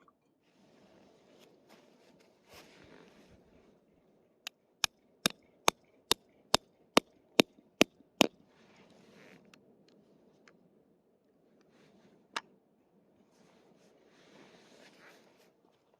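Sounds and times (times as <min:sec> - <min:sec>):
faint rustling: 0:00.4 - 0:03.8.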